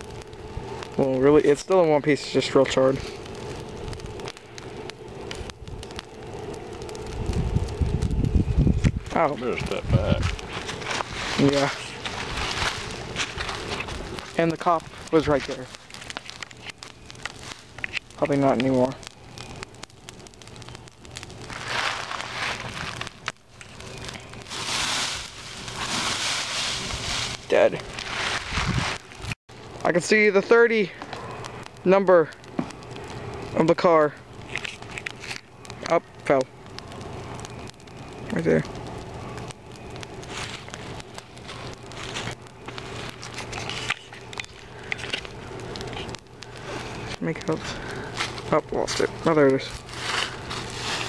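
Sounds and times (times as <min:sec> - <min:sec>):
fire crackling and popping: 0:00.0 - 0:51.0
bursts of hissing: 0:21.3 - 0:29.3.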